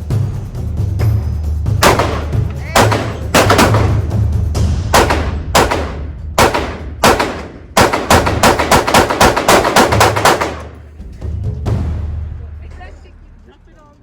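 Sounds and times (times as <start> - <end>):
gunshots with ringing tail: 1.8 - 4.2, 4.9 - 10.8.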